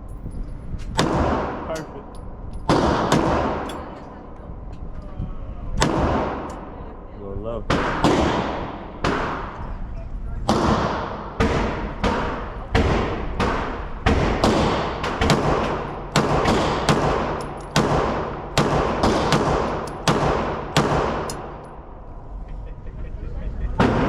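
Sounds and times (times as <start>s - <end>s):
echoing gunshots: 1.0s - 1.8s, 2.7s - 3.7s, 5.8s - 6.5s, 7.7s - 9.6s, 10.4s - 21.9s.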